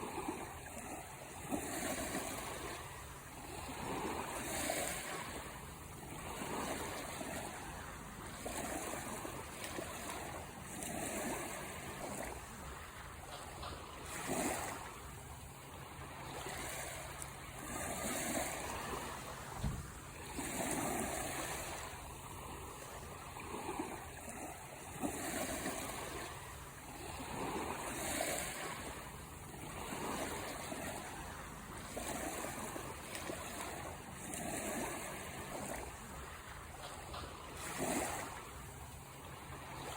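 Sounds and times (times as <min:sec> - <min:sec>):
small sea waves breaking on shore: 0:00.0 - 0:39.9
low thump: 0:19.6 - 0:19.9.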